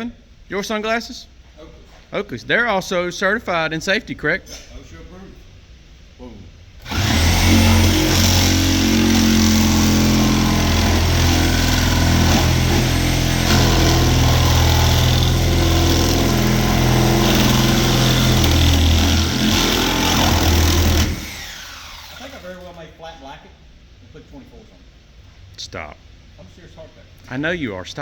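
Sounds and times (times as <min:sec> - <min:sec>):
reciprocating saw cutting sheet metal: 0:06.8 - 0:22.6.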